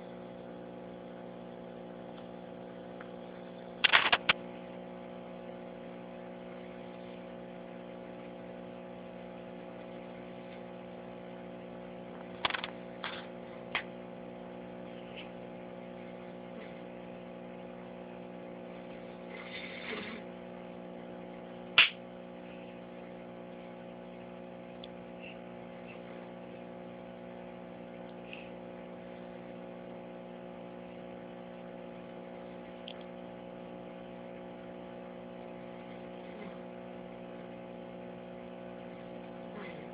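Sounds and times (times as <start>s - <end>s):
steady hum: 0.0s - 39.9s
quick clicks: 3.8s - 4.4s.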